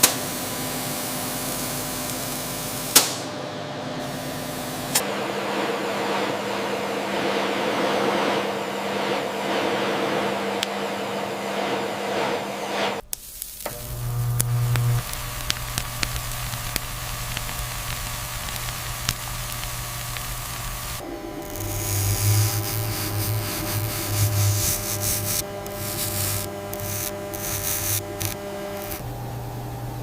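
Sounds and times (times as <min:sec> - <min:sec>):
machine hum: 0:00.0 - 0:30.0
hissing spray-like noise: 0:04.0 - 0:29.0.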